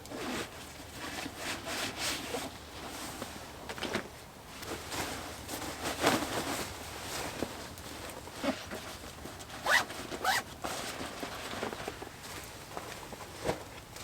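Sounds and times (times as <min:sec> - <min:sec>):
zip being pulled: 0:09.6 - 0:10.4.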